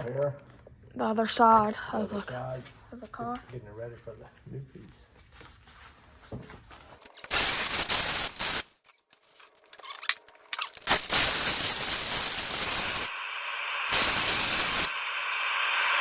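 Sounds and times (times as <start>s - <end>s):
power tool cutting sheet metal: 10.8s - 16.0s.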